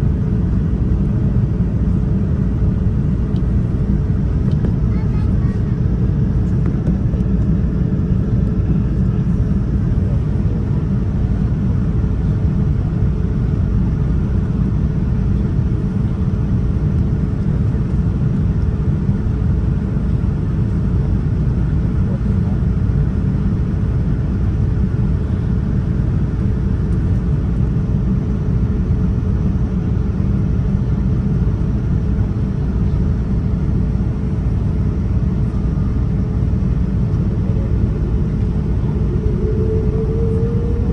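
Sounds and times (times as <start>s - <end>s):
airliner cabin engine rumble: 0.0s - 40.9s
faint steady hum: 33.4s - 40.9s.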